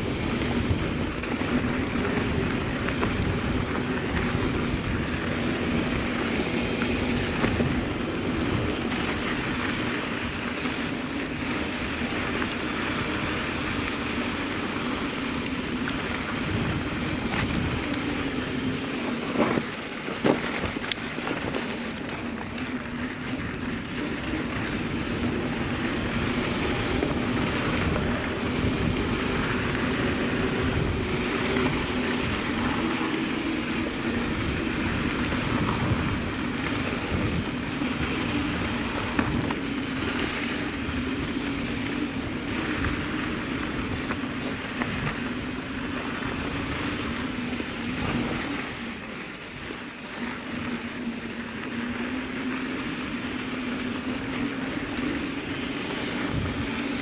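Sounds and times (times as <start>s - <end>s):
wind buffeting microphone: 0.0s - 22.2s, 23.4s - 49.1s, 55.1s - 57.0s
bike tyre and gear rattle: 0.0s - 57.0s
steady buzzing hum: 0.0s - 57.0s.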